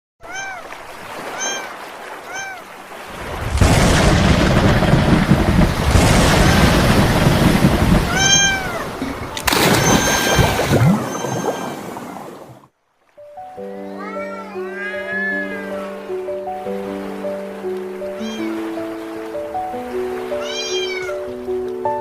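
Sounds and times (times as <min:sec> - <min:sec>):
cat meowing: 0:00.2 - 0:02.7, 0:08.1 - 0:08.9, 0:13.8 - 0:15.8, 0:18.1 - 0:18.6, 0:20.3 - 0:21.3
loud rushing noise: 0:03.1 - 0:11.0.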